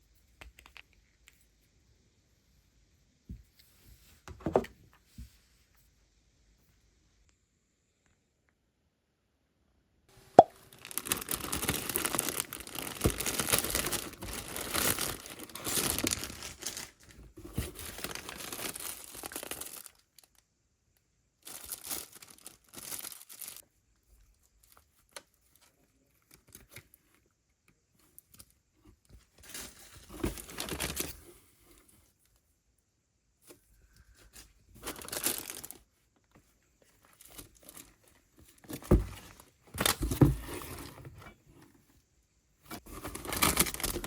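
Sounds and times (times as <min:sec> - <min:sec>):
packaging tearing and rustling: 0:10.6 - 0:20.0, 0:34.8 - 0:35.8, 0:42.9 - 0:44.0.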